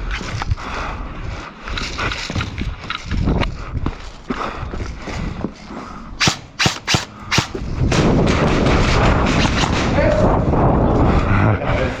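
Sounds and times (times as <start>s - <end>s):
airsoft gun shots: 6.2s - 7.8s.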